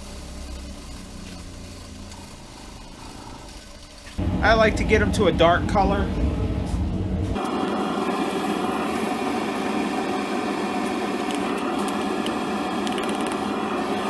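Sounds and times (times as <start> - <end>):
torch flame hissing: 0.0 - 4.4, 7.3 - 14.0.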